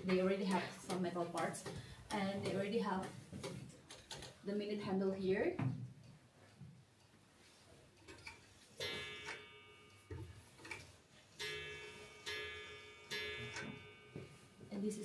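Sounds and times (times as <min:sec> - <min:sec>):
mechanical clocks ticking: 0:00.0 - 0:04.5, 0:07.9 - 0:15.0
clock chime notes ringing: 0:08.8 - 0:15.0.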